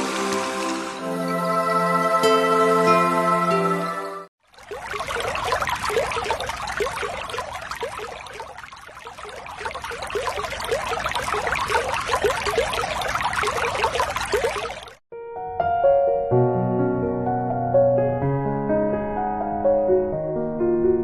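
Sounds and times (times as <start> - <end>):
shallow water trickling: 4.4 - 15.0.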